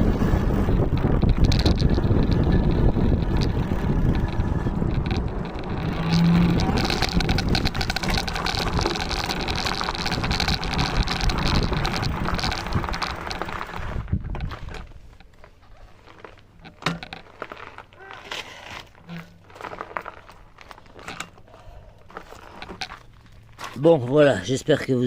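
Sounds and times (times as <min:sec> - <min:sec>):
wind buffeting microphone: 0:00.0 - 0:15.1
bicycle tyres and hub motor: 0:00.0 - 0:23.8.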